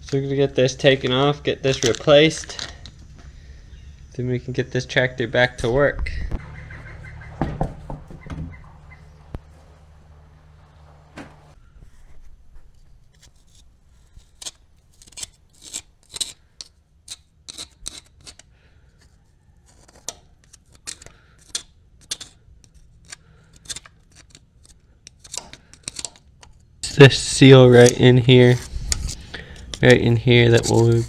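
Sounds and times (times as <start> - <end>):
hand tools clicking: 0.0 - 6.5, 19.8 - 31.0
low steady hum: 0.0 - 13.0, 26.8 - 31.0.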